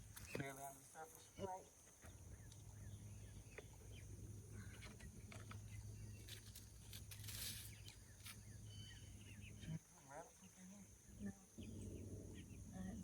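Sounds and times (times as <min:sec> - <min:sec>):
bird chirps: 0:01.2 - 0:09.8
rustle: 0:04.5 - 0:10.9.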